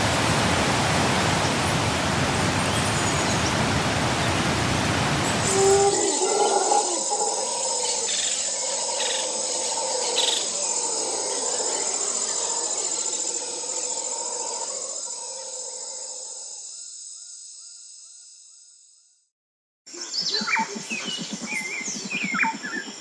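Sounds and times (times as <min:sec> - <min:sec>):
insects trilling: 0:05.3 - 0:19.0, 0:19.9 - 0:23.0.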